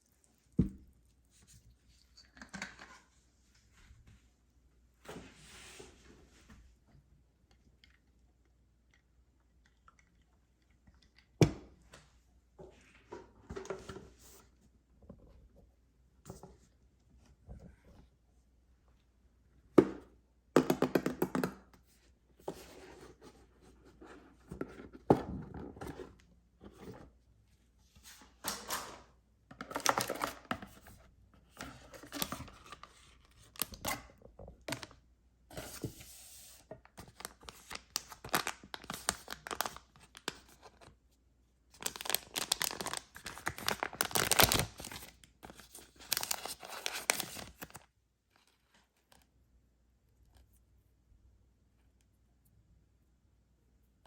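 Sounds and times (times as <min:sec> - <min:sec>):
packaging tearing and crinkling: 0:37.4 - 0:40.3, 0:41.8 - 0:47.8.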